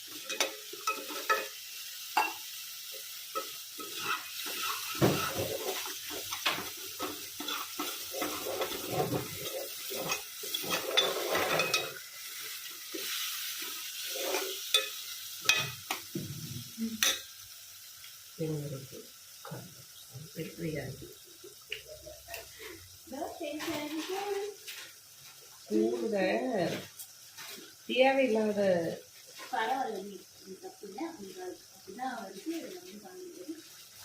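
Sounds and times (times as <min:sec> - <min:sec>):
food sizzling in a pan: 0:00.0 - 0:34.0
spoon scraping pan: 0:00.1 - 0:01.6, 0:02.2 - 0:15.8.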